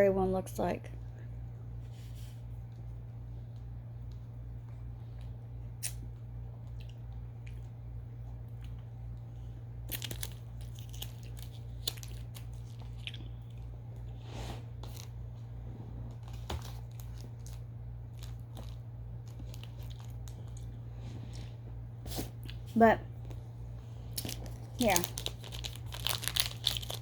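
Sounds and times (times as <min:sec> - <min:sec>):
low electrical hum: 0:00.0 - 0:27.0
wet mouth clicks and smacks: 0:05.8 - 0:06.0.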